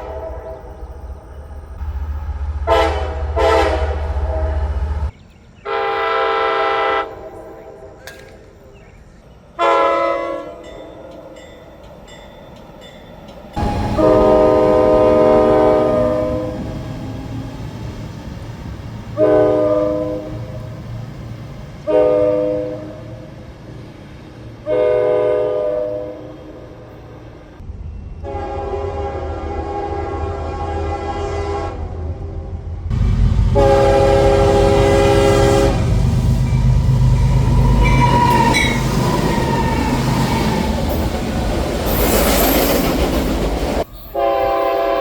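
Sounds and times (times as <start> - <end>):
diesel locomotive horn blasts: 0.0 - 0.9, 1.8 - 5.1, 5.7 - 8.1, 9.6 - 11.4, 13.6 - 17.8, 19.0 - 21.0, 21.8 - 23.4, 24.6 - 27.3, 28.2 - 41.0, 44.1 - 45.0
low rumble of passing train: 0.0 - 45.0.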